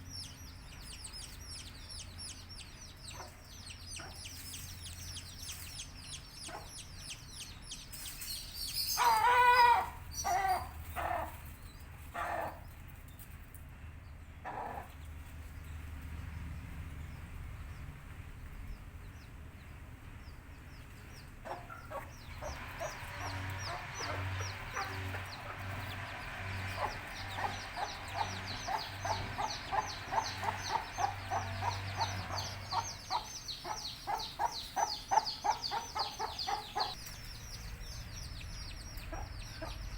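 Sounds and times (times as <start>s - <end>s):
chicks peeping: 0.0s - 12.8s, 16.3s - 39.9s
chicken calling: 8.9s - 11.4s, 21.4s - 37.0s
chicken clucking: 21.4s - 37.0s.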